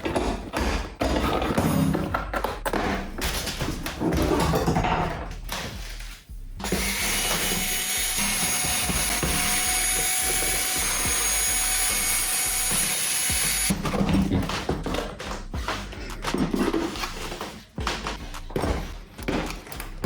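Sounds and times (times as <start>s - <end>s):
electric drill running: 6.6s - 13.7s.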